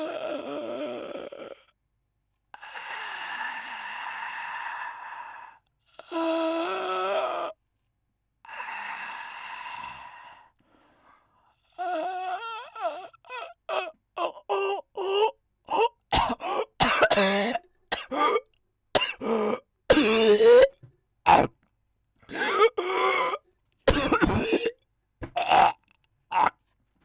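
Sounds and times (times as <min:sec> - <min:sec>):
man imitating snoring: 0:21.3 - 0:21.5.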